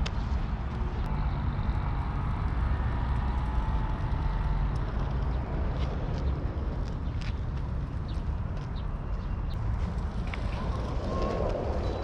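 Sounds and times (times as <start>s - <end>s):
skateboard wheels rolling on pavement: 0.0s - 12.0s
light clicks of wheels over joints: 1.1s - 12.0s.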